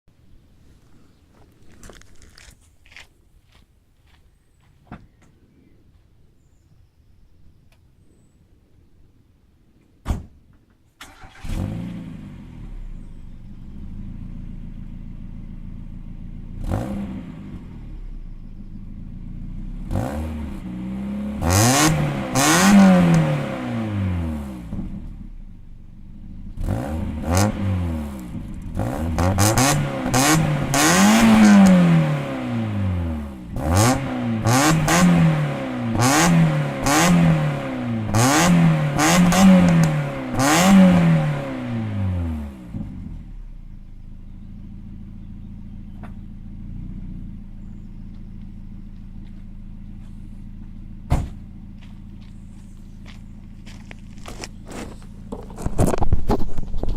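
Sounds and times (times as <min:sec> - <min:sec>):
car engine starting and idling: 0:10.7 - 0:56.9
car engine revving: 0:11.0 - 0:56.9
click: 0:39.6 - 0:40.0.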